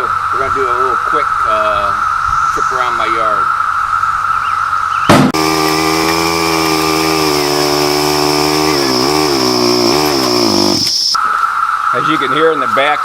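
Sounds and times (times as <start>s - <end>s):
four-wheeler engine running: 5.4s - 11.2s.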